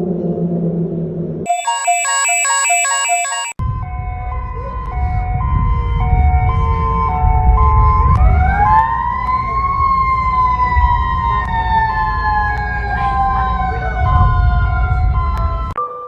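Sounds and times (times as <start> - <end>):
two-tone alarm: 1.5 - 3.8
wailing siren: 1.5 - 15.8.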